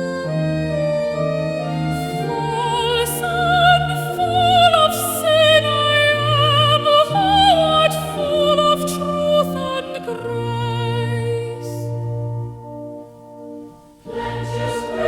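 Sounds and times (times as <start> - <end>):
sustained accompaniment chords: 0.0 - 15.0.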